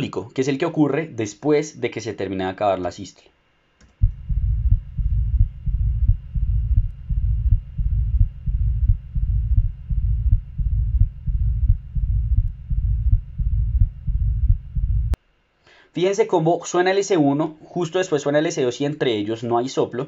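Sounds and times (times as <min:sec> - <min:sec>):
heart murmur: 0:04.0 - 0:15.2
heartbeat sounds: 0:04.0 - 0:15.2.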